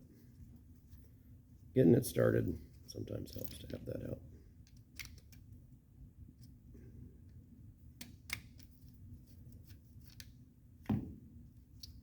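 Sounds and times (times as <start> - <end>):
low steady hum: 0.0 - 12.0
faint clicks and handling noises: 2.6 - 5.6, 6.3 - 11.0.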